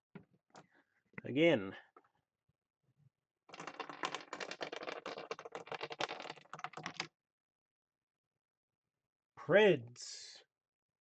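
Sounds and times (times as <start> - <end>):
chip clattering against pegs: 3.5 - 7.1.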